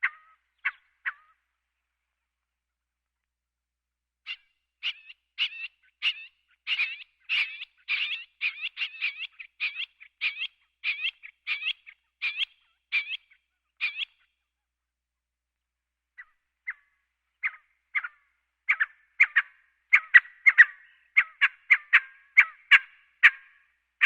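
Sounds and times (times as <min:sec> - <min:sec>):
quail calling: 0:00.0 - 0:01.5, 0:04.3 - 0:14.3, 0:16.2 - 0:23.6.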